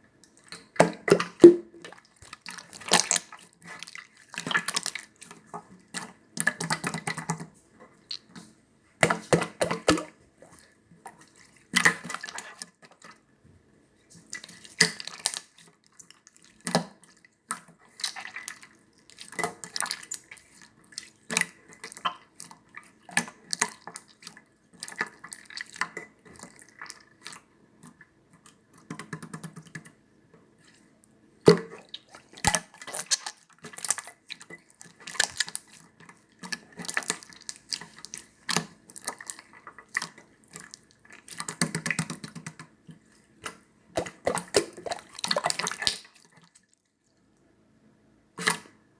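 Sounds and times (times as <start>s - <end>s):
slime squishing by hand: 31.5s - 34.3s, 34.9s - 46.2s.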